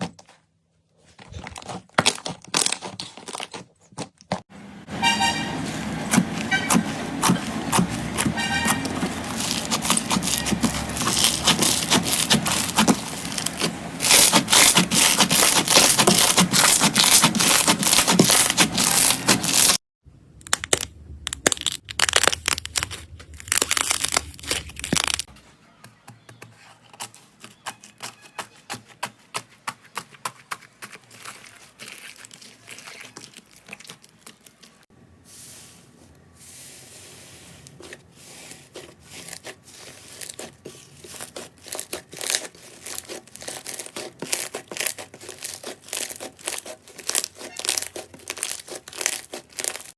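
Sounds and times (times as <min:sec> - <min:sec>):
slime crackling and popping: 0:06.1 - 0:19.8, 0:20.4 - 0:25.3, 0:30.4 - 0:34.8, 0:39.1 - 0:49.9.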